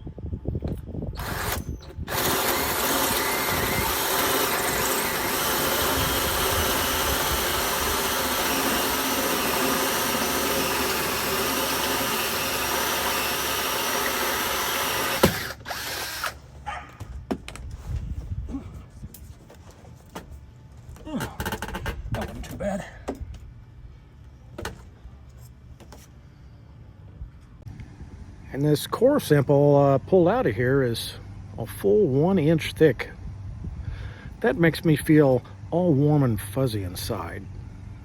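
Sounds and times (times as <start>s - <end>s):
drill click: 1.2s - 16.4s
electric drill cutting with hole saw: 1.2s - 16.4s
light knocks and handling: 16.8s - 23.5s.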